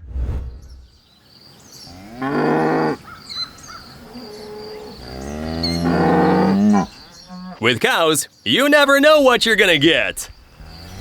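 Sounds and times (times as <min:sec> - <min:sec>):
cow mooing: 0:04.1 - 0:07.6.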